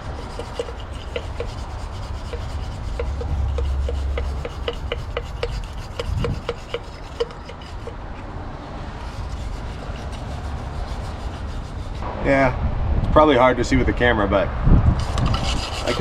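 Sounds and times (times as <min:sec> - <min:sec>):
wire brush scraping metal: 0:00.0 - 0:08.3, 0:08.9 - 0:12.0, 0:15.0 - 0:16.0.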